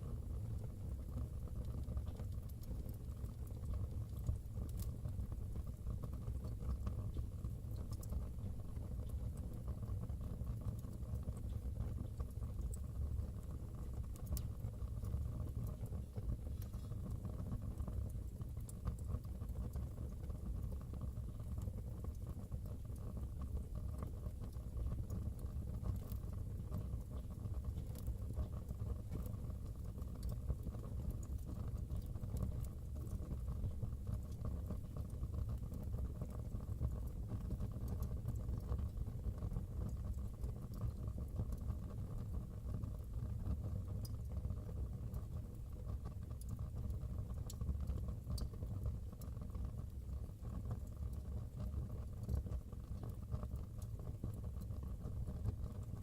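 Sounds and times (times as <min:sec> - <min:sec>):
wood fire crackling and popping: 0:00.0 - 0:56.0.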